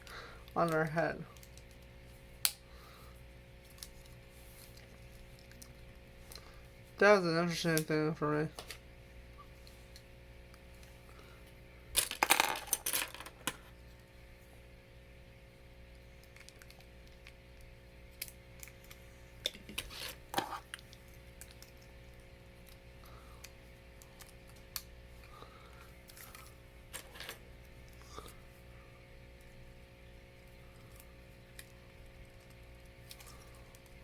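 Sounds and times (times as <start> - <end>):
faint steady hum: 0.0 - 34.0
plastic pieces clicking and rattling: 12.0 - 13.6.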